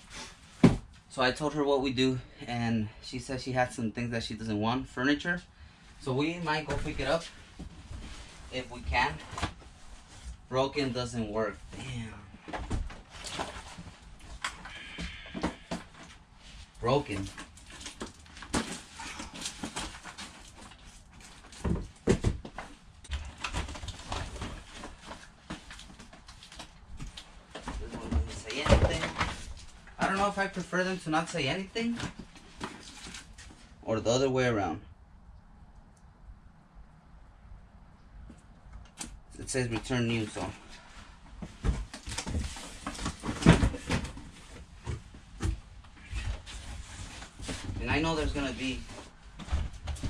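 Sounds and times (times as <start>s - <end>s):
boxes thumping down: 0.6s - 0.9s, 18.4s - 20.3s, 21.5s - 25.0s, 41.5s - 45.6s
boxes knocking and clattering: 0.6s - 1.0s, 17.1s - 26.2s, 27.0s - 30.4s, 41.4s - 50.0s
rustling: 5.7s - 33.8s, 39.7s - 50.0s.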